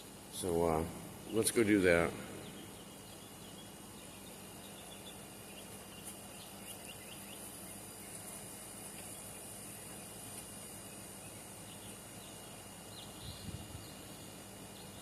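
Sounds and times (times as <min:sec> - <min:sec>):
insects buzzing: 0:00.0 - 0:15.0
low steady hum: 0:00.0 - 0:15.0
bird chirps: 0:01.2 - 0:08.2, 0:11.0 - 0:15.0.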